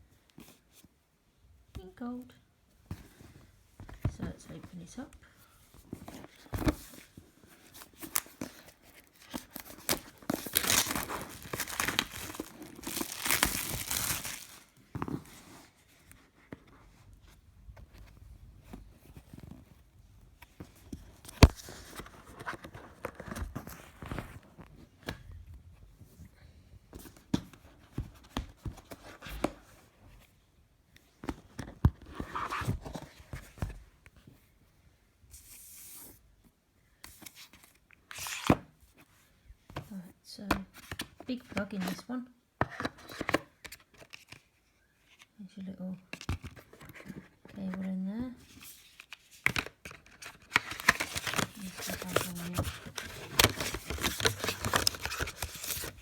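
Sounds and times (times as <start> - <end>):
box rustling and knocking: 5.8 - 15.6, 49.4 - 56.0
plastic wrap tearing and crinkling: 9.4 - 14.8.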